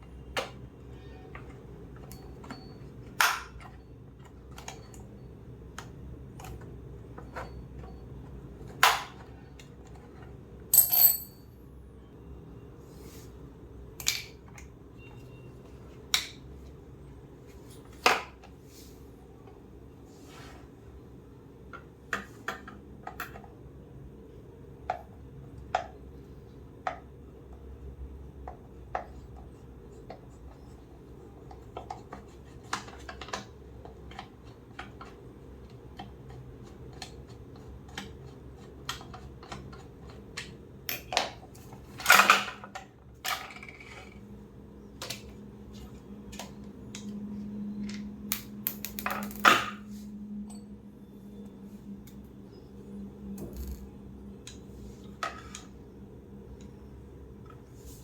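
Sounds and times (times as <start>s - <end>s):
small parts and tools clinking: 9.8s - 11.5s, 47.8s - 49.8s, 53.3s - 54.6s
parts clattering: 10.7s - 11.4s.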